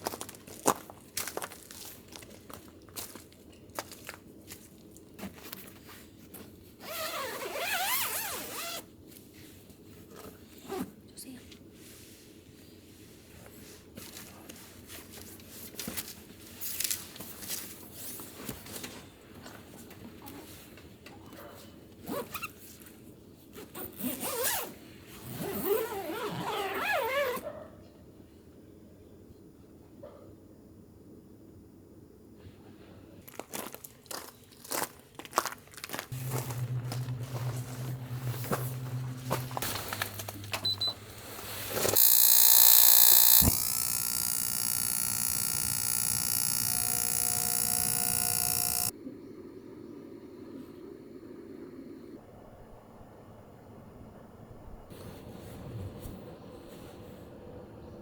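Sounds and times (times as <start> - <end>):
zipper being pulled: 6.8 - 8.8, 23.8 - 24.7, 25.3 - 27.4
handling clicks and crinkling: 35.7 - 48.9
low hum: 36.1 - 48.9
steady tones: 36.1 - 48.9.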